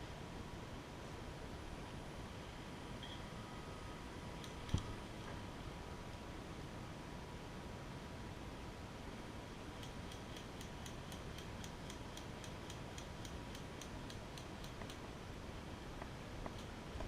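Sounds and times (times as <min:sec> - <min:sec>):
steady hiss: 0:00.0 - 0:17.0
faint even ticking: 0:09.8 - 0:15.0.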